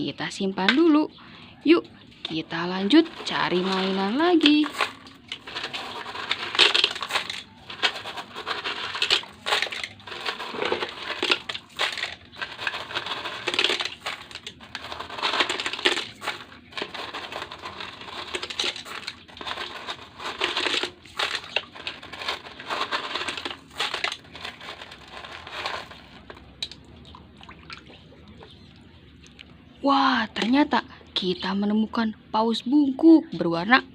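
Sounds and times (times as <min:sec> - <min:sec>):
hand scooping gravel: 0:02.8 - 0:26.4.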